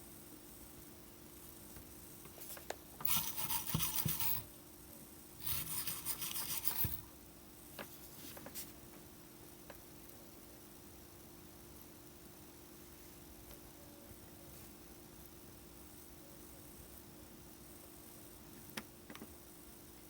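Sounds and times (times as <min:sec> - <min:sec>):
scratchy rubbing: 0:03.1 - 0:04.5, 0:05.4 - 0:07.0.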